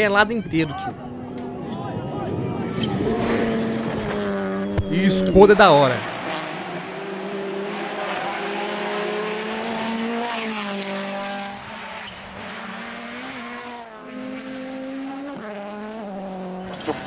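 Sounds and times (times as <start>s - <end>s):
rally car engine revving: 0.8s - 17.0s
tyres on gravel: 2.8s - 5.4s.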